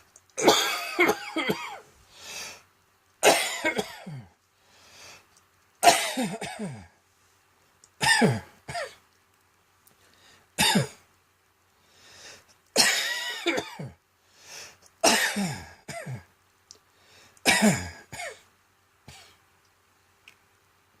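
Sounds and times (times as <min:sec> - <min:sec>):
person coughing: 0:00.4 - 0:01.8, 0:03.2 - 0:04.3, 0:05.8 - 0:07.0, 0:08.0 - 0:09.0, 0:10.6 - 0:11.0, 0:12.8 - 0:14.0, 0:15.0 - 0:16.3, 0:17.5 - 0:18.4.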